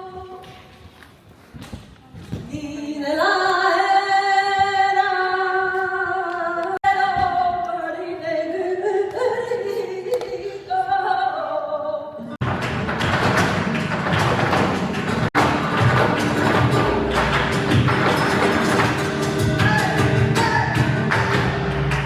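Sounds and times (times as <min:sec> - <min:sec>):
person singing flamenco solo: 0:13.0 - 0:22.0.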